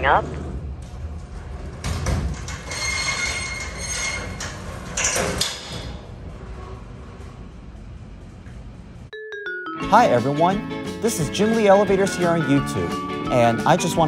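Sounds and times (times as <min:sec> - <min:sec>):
elevator car rumbling: 0:00.0 - 0:09.1
elevator doors sliding shut: 0:00.1 - 0:08.8.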